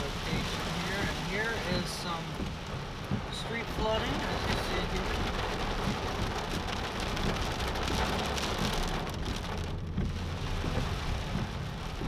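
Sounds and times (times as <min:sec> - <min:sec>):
heavy rain pouring: 0:00.0 - 0:12.0
low rumble: 0:00.0 - 0:12.0.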